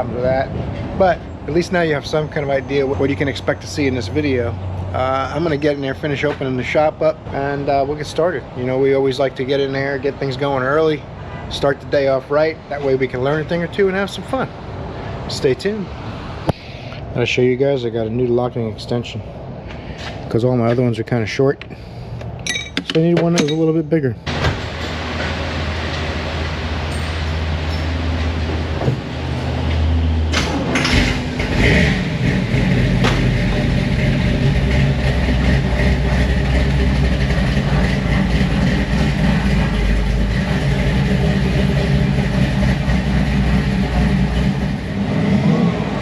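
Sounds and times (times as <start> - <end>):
engine running steadily: 24.2 - 46.0.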